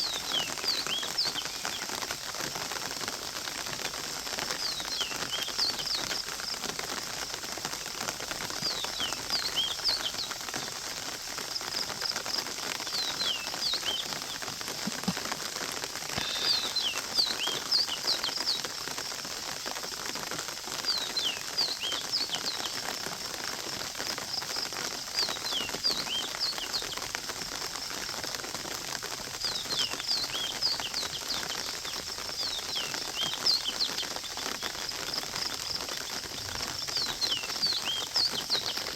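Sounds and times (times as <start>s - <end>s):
steady high hiss: 0.0s - 38.9s
birds whistling: 12.9s - 14.4s, 16.2s - 18.6s.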